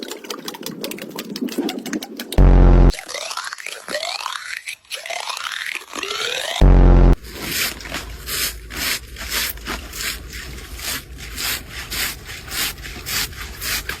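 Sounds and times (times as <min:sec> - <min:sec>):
rhythmic scraping strokes: 0:02.4 - 0:02.9.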